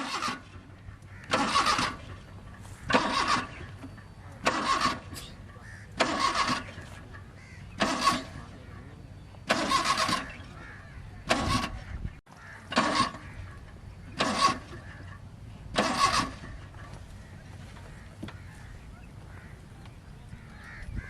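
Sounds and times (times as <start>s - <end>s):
car starter cranking engine: 0.0s - 8.7s, 9.4s - 11.9s, 12.6s - 16.9s.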